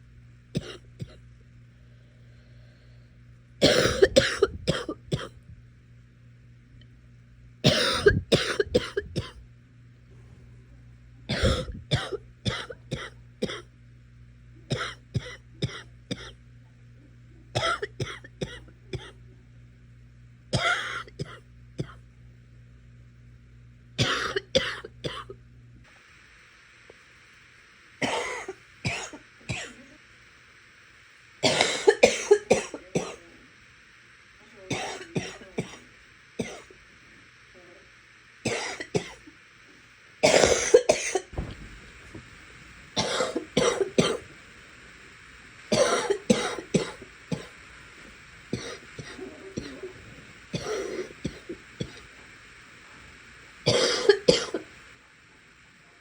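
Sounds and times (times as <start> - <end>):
person coughing in fits: 0.6 - 1.2, 3.6 - 5.4, 7.6 - 9.4, 11.3 - 13.7, 14.7 - 16.4, 17.6 - 19.2, 20.6 - 22.0, 24.0 - 25.4, 28.0 - 29.8, 31.4 - 33.2, 34.7 - 35.8, 38.5 - 39.3, 40.2 - 41.4, 43.0 - 44.2, 45.7 - 47.5, 48.6 - 49.9, 50.6 - 52.0, 53.7 - 54.6.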